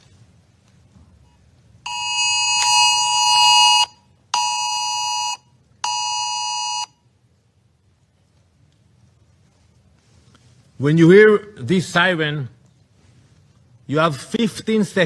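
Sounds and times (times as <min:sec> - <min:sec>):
electronic alarm siren blasts: 0:01.9 - 0:06.9.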